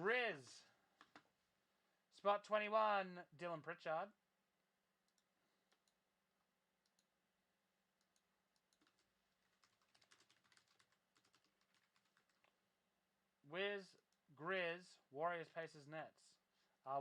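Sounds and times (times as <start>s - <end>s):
faint keyboard typing: 1.0s - 1.3s, 5.0s - 6.1s, 6.8s - 7.2s, 8.0s - 12.7s.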